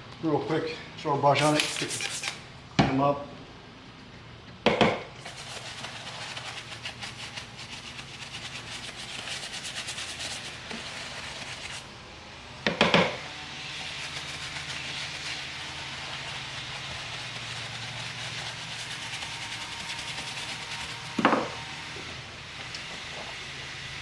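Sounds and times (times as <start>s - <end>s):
brush scrubbing leather: 5.2s - 11.9s, 13.6s - 21.8s
handling knock: 21.2s - 21.6s.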